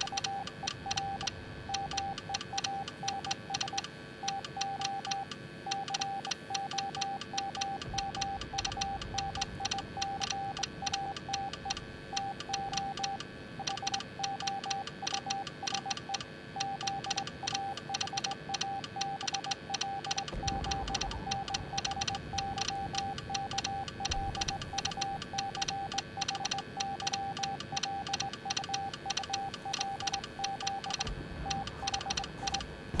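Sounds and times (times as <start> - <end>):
fast even clicking: 0.0 - 33.0
morse code beeping: 0.0 - 33.0
low rumble: 20.3 - 25.0, 31.0 - 33.0.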